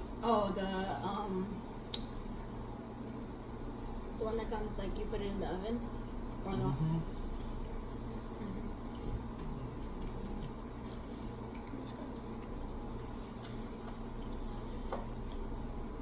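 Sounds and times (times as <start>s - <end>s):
small mouth clicks: 1.8s - 2.1s
chewing with wet mouth noises: 7.2s - 15.8s.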